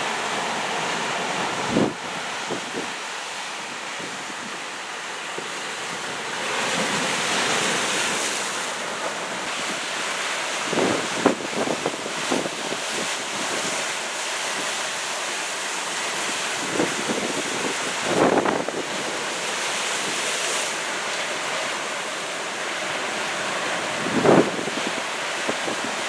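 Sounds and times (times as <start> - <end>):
ocean surf washing ashore: 0.0 - 26.0
wind buffeting microphone: 1.4 - 3.0, 10.6 - 13.7, 16.6 - 19.0, 23.9 - 26.0.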